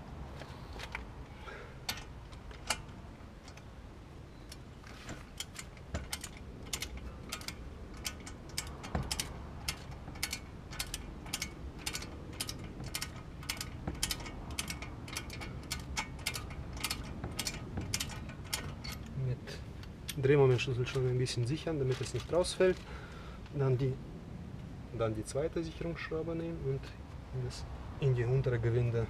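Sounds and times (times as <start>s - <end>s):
torque wrench ratchet clicking: 5.3s - 19.1s.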